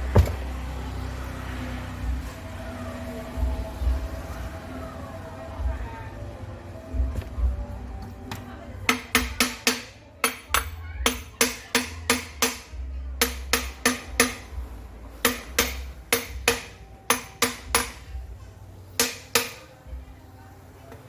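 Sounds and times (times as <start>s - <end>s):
hammer striking metal: 8.8s - 14.6s, 15.2s - 18.2s, 19.0s - 19.7s.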